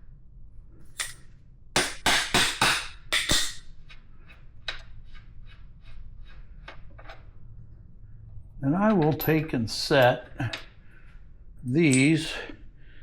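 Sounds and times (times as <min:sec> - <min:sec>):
metal parts clinking: 0:00.9 - 0:01.3, 0:08.8 - 0:10.7, 0:11.6 - 0:12.5
sharp metallic strikes: 0:01.8 - 0:03.6.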